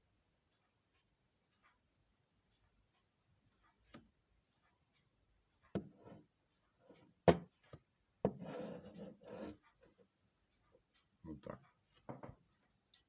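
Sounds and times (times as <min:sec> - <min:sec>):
rubbing and scraping: 0:08.3 - 0:09.8.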